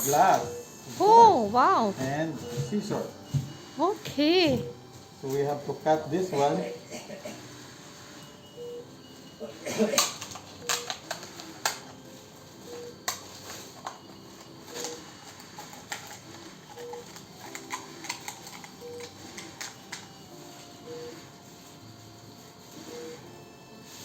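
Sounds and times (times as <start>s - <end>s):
scissors cutting a cup: 9.8s - 11.9s, 14.8s - 20.1s.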